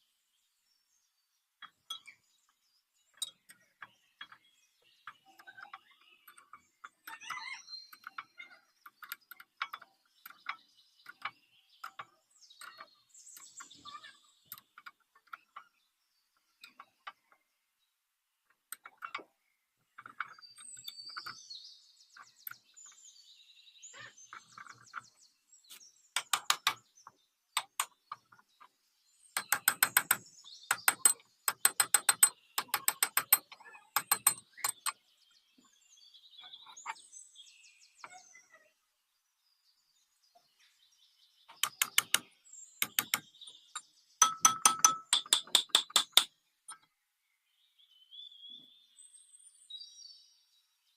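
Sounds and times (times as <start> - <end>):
hand tools clicking on metal: 26.2 - 26.8, 29.4 - 34.9, 41.6 - 42.2, 42.8 - 43.3, 44.2 - 46.3.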